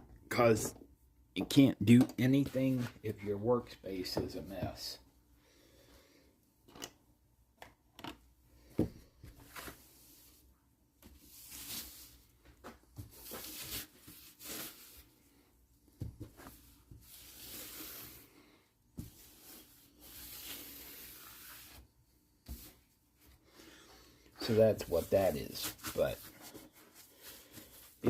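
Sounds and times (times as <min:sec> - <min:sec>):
cloth wiping a workbench: 0:16.3 - 0:18.4, 0:19.0 - 0:22.9, 0:24.4 - 0:28.0.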